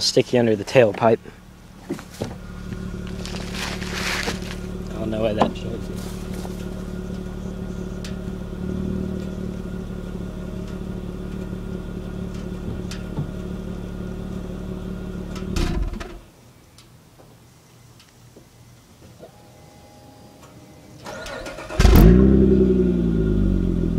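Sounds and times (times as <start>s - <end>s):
car exhaust idling: 0.0s - 16.3s, 21.2s - 23.9s.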